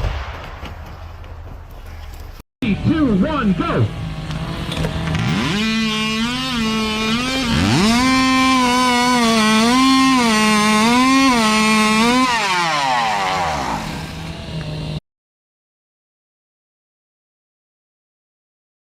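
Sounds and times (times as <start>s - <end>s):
chainsaw revving and cutting: 3.7s - 15.0s.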